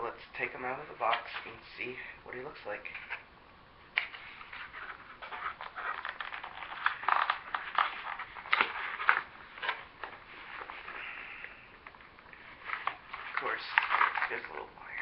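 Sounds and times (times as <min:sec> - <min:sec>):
cardboard packaging rustling: 0:04.0 - 0:14.7.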